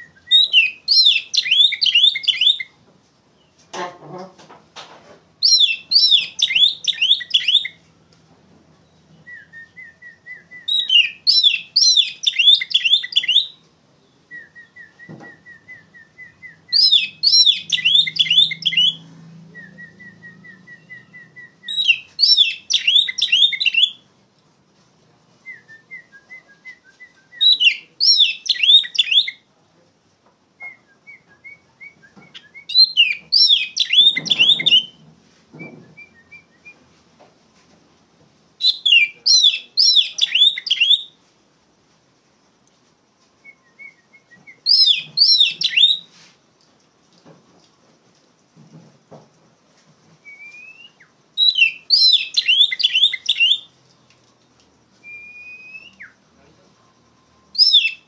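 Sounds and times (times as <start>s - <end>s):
songbird singing: 0.0s - 4.2s, 5.3s - 8.0s, 8.7s - 24.1s, 25.4s - 29.6s, 30.6s - 36.9s, 38.6s - 41.2s, 43.4s - 46.2s, 50.1s - 58.0s.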